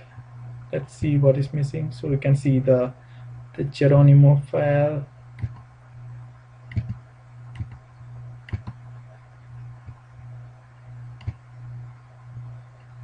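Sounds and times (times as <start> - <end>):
low electrical hum: 0.0 - 13.0
computer mouse clicks: 5.4 - 5.7, 6.7 - 7.8, 8.5 - 8.8, 11.2 - 11.4.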